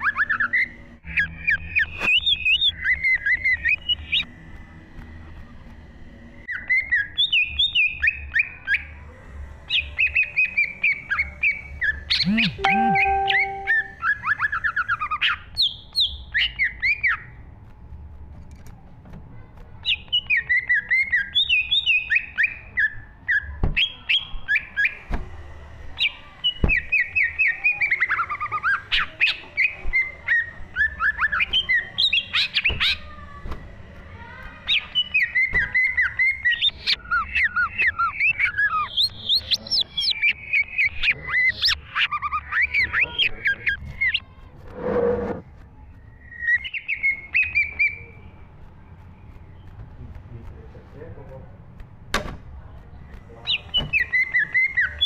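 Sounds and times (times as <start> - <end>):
bird singing chirps and whistles: 46.1 - 48.1, 53.5 - 55.0.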